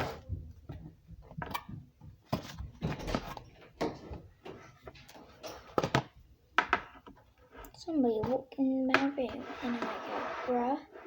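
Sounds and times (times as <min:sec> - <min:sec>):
objects knocking and clattering: 0:00.0 - 0:07.3.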